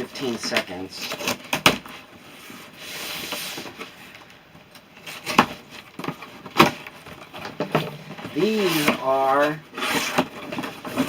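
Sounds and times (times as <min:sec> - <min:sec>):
cardboard boxes rustling and scraping: 0:00.0 - 0:11.0
boxes knocking when set down: 0:05.3 - 0:09.0.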